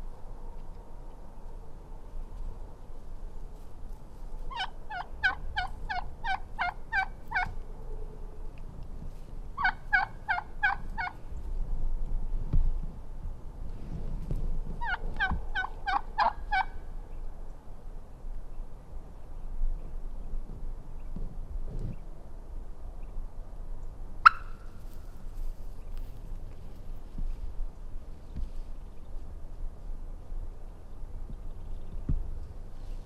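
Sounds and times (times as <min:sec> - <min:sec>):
wild turkey yelping: 0:04.5 - 0:07.5, 0:09.6 - 0:11.1, 0:14.8 - 0:16.7, 0:24.2 - 0:24.7
low thumps and rustles: 0:12.3 - 0:15.4.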